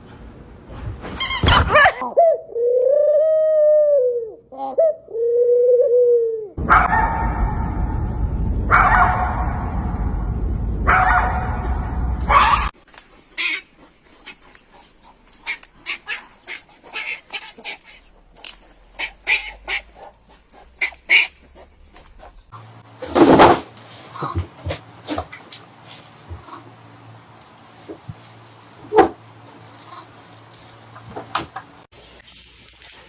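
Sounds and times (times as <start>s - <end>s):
dog yipping: 1.2s - 2.4s, 15.4s - 21.6s
loud rough noise: 6.6s - 12.7s
dog whining: 15.4s - 22.4s.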